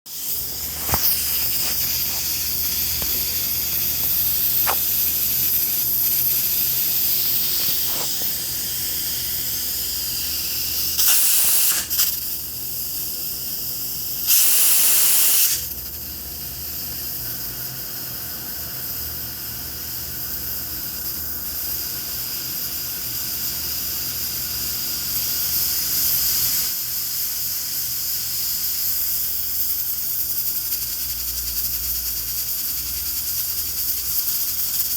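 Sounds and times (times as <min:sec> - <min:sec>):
steam spurts: 0:00.1 - 0:12.3, 0:14.2 - 0:15.7
pressure cooker hissing: 0:00.1 - 0:34.9.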